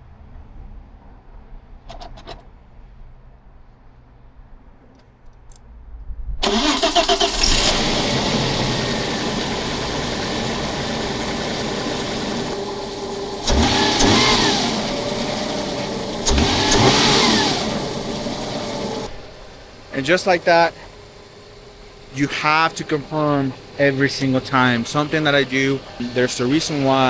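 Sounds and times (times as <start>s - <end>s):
car engine revving: 6.4s - 27.0s
car engine starting and running: 6.4s - 27.0s.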